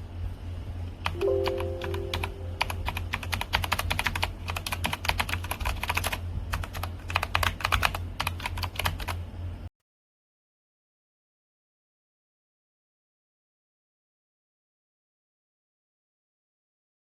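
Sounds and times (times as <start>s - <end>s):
steady low hum: 0.0s - 9.7s
mechanical keyboard typing: 1.0s - 9.2s.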